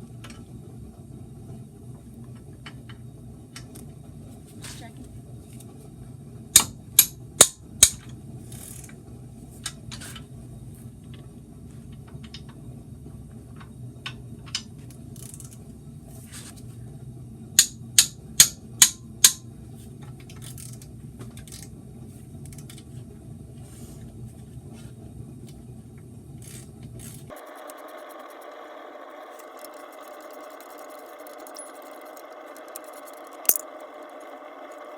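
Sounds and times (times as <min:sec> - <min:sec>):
steady low hum: 0:15.0 - 0:34.9
ratchet wrench clicking: 0:29.3 - 0:34.9.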